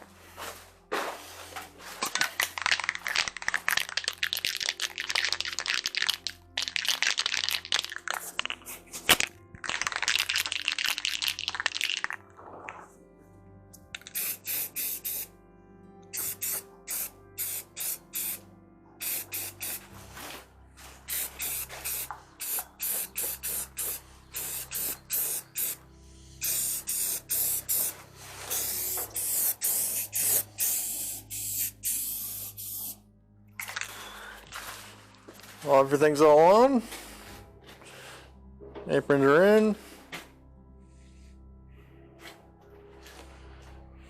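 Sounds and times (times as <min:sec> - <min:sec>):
spray paint hissing: 0:02.6 - 0:09.0, 0:14.0 - 0:15.3, 0:16.1 - 0:18.4, 0:19.0 - 0:19.9, 0:21.0 - 0:33.0.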